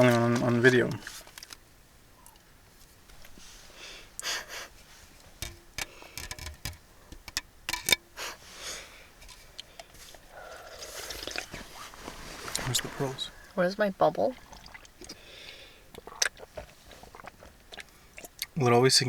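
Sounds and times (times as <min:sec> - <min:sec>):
plastic cup clicks and rustles: 0:05.4 - 0:08.0
sipping through a straw: 0:10.1 - 0:13.2.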